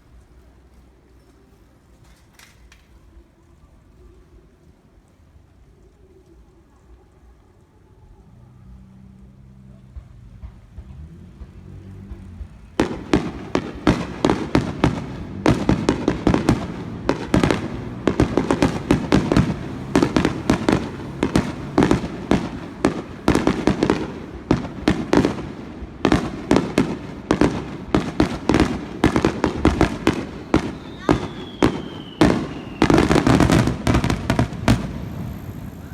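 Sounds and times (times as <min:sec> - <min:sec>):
fireworks bangs: 0:09.9 - 0:35.9.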